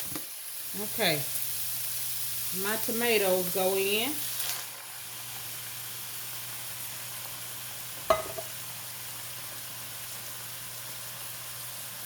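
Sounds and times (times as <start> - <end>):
meat sizzling in a skillet: 0.0 - 12.0
small knock: 8.1 - 8.5.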